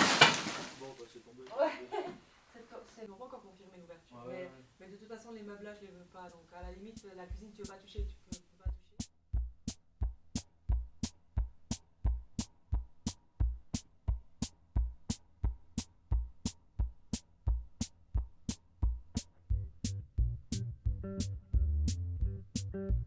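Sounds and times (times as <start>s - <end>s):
low drum thumps: 6.6s - 8.8s, 9.4s - 13.6s, 17.5s - 23.0s
sustained bass: 19.5s - 23.0s.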